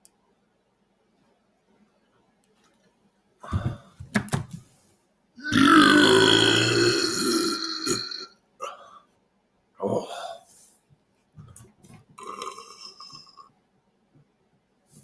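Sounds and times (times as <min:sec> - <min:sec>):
man belching: 0:05.4 - 0:08.3, 0:12.2 - 0:13.4.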